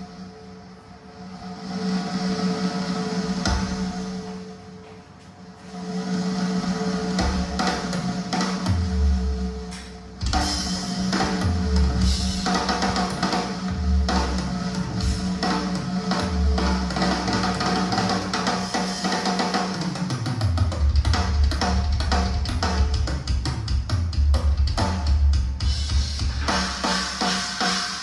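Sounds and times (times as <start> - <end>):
drum and guitar music: 9.7 - 14.4, 15.0 - 28.0.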